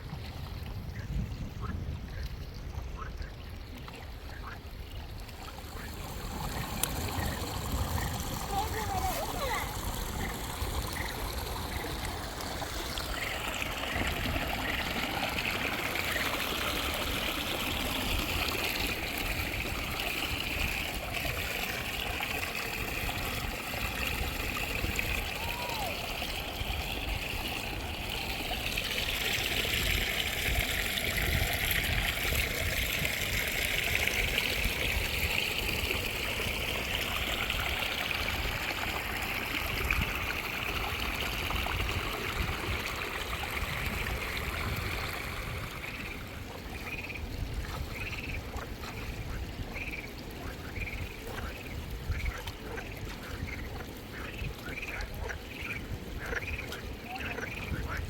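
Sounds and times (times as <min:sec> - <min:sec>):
water trickling: 0:00.0 - 0:58.0
ducks quacking: 0:02.9 - 0:24.7, 0:45.9 - 0:58.0.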